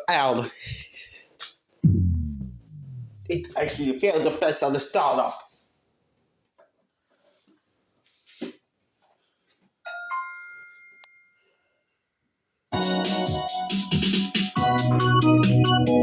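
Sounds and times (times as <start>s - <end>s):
keyboard music through speaker: 1.8s - 3.5s.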